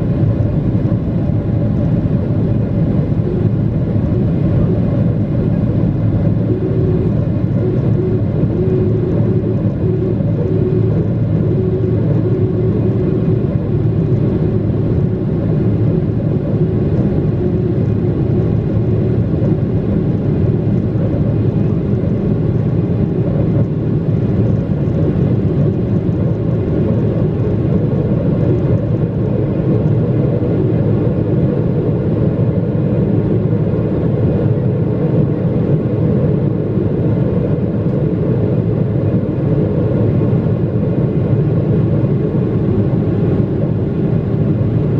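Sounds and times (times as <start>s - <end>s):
jet engines rumbling in cabin: 0.0s - 44.9s.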